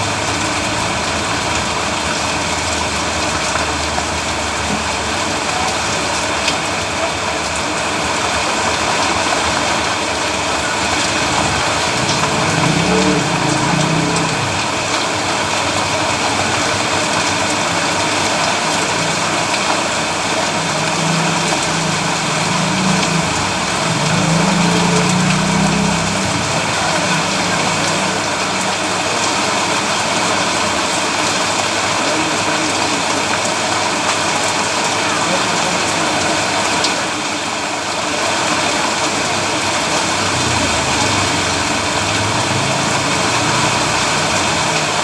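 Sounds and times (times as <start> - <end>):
vehicle engine humming: 0.0 - 32.0, 33.3 - 45.0
heavy rain hissing: 0.0 - 45.0.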